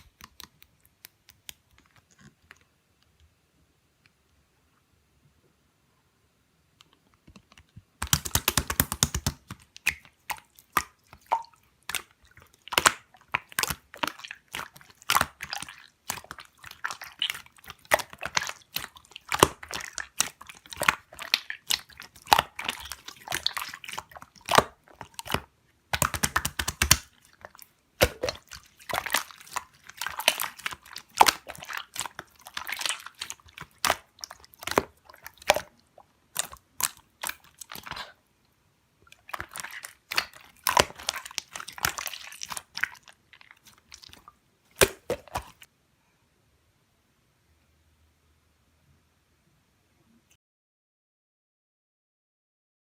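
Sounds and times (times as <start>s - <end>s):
slime squishing and clicking: 0.0s - 2.7s, 6.9s - 38.2s, 39.1s - 45.7s.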